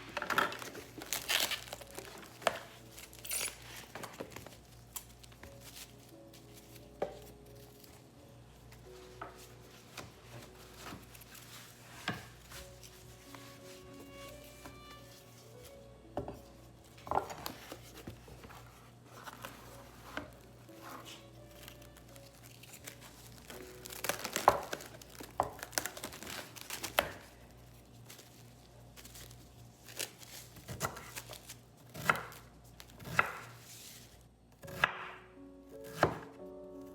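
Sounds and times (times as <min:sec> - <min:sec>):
packaging crinkling: 0:00.4 - 0:08.0, 0:21.0 - 0:31.7.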